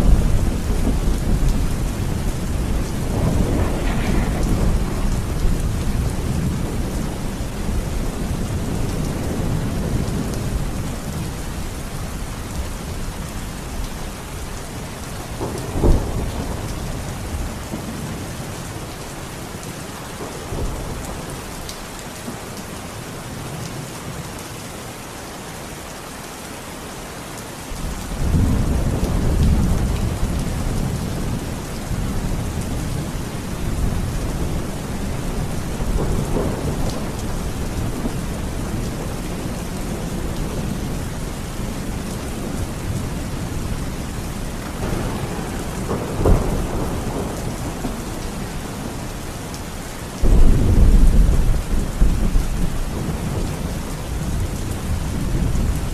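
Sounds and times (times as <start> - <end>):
rolling thunder: 0.0 - 11.3, 27.9 - 49.3, 50.2 - 55.9
steady rain: 0.0 - 55.9
sharp thunder crack: 3.0 - 6.9, 44.8 - 48.0.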